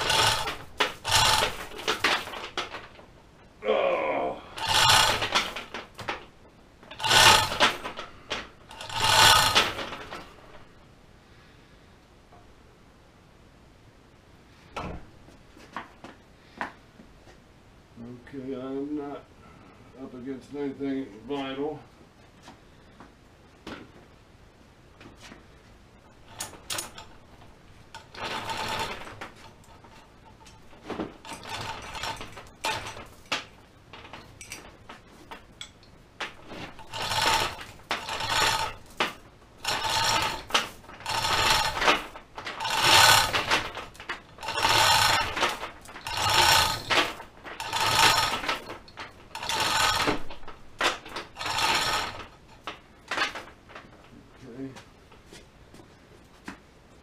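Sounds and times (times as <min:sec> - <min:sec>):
metal parts knocking and clicking: 0:00.0 - 0:03.0, 0:04.6 - 0:06.3, 0:06.9 - 0:10.6, 0:26.2 - 0:53.8.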